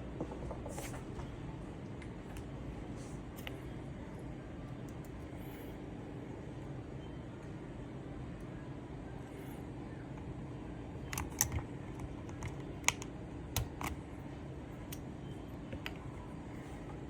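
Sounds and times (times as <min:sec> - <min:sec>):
mechanical keyboard clicking: 0:11.1 - 0:14.0.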